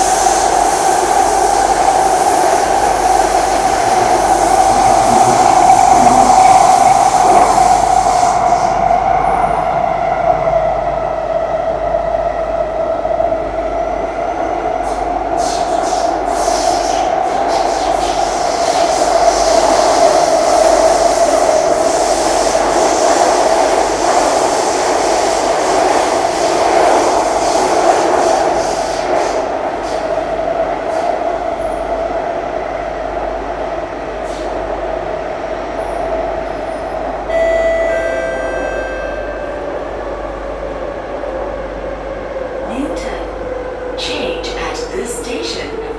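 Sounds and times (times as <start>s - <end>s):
wheels rumbling on rails: 0.0s - 9.7s
train whine: 0.0s - 45.9s.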